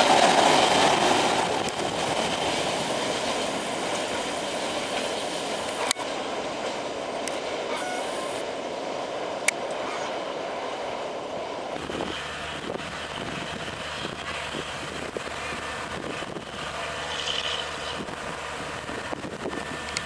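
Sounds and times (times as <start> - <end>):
broad rushing noise: 0.0 - 20.0
engine humming steadily: 11.1 - 20.0.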